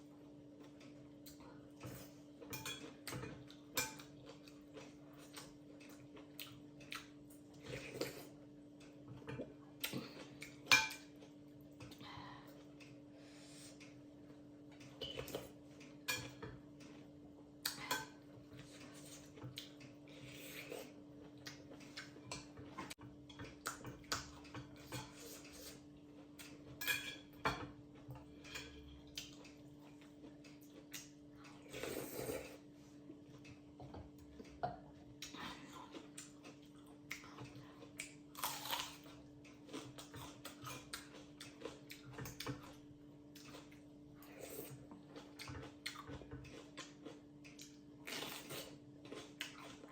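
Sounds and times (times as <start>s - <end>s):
wet chewing: 35.2s - 49.9s.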